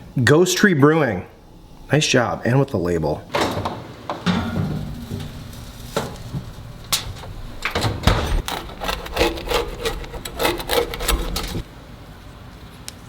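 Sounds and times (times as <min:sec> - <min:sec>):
kitchen items knocking and clattering: 0:03.3 - 0:11.6
rubbing and scraping on hard surface: 0:08.3 - 0:11.7.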